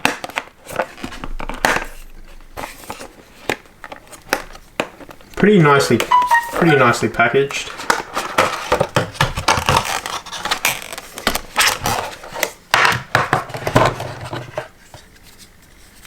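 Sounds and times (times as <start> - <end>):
packaging scratching and clicking: 7.7 - 12.6.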